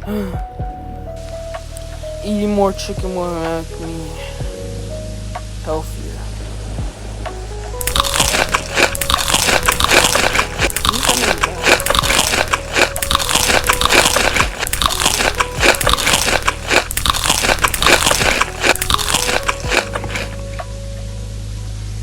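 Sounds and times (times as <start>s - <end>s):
background music: 0.0s - 22.0s
chewing crunchy food: 7.8s - 20.4s.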